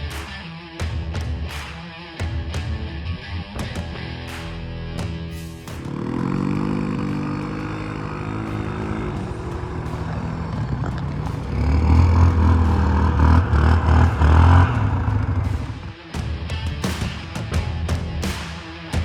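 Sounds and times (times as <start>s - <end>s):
quad engine running: 5.8s - 15.7s.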